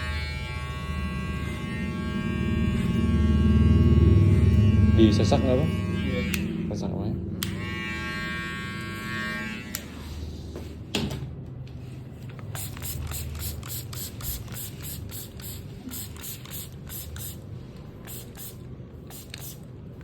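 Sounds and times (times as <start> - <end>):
spray bottle misting water: 12.5 - 17.4, 18.0 - 19.6.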